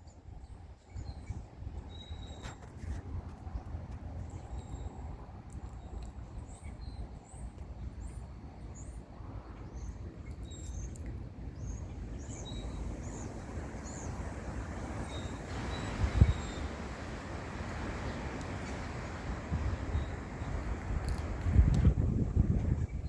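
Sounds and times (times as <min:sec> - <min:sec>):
low outdoor rumble: 0:11.1 - 0:23.0
bird chirping: 0:11.6 - 0:21.3.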